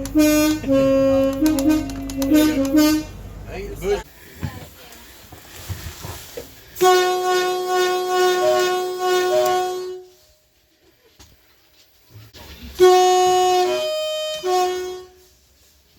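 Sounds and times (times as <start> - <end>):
two-tone train horn: 0.0 - 3.2, 6.8 - 10.4, 12.8 - 15.4.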